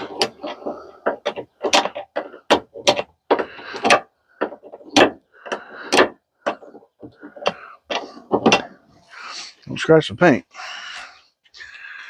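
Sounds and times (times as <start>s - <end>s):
plastic scraping: 0.0s - 9.0s
hard plastic clicks and knocks: 0.1s - 8.7s.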